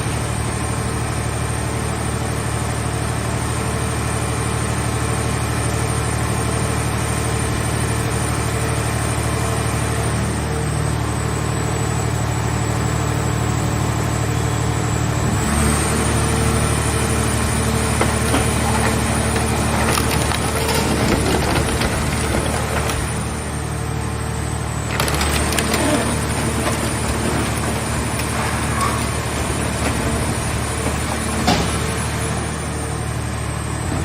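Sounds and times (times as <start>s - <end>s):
hydraulic unit hum with whine: 0.0s - 34.0s
car body crackling and creaking: 17.9s - 32.2s.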